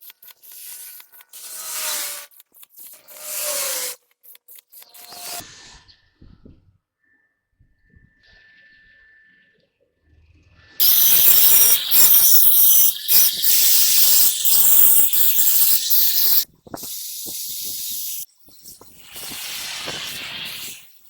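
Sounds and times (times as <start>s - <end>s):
pressurised gas hissing: 10.8s - 21.0s.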